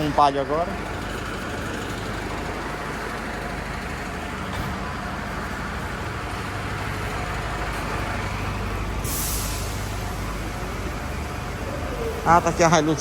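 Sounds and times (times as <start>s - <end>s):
motor vehicle running: 0.0s - 13.0s.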